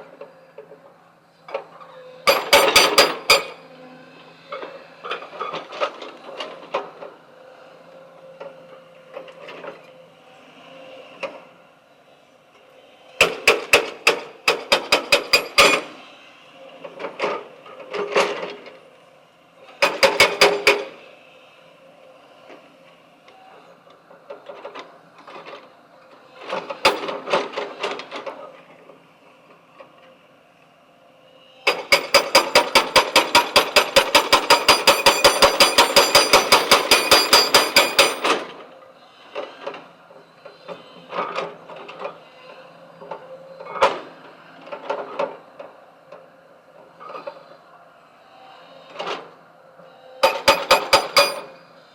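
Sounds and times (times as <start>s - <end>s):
rapid mechanical hammering: 2.3s - 3.5s, 31.7s - 38.3s, 50.2s - 51.5s.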